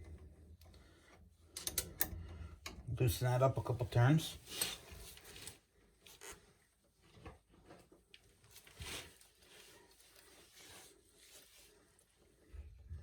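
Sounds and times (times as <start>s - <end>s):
faint handling clicks and rustles: 3.7s - 13.0s.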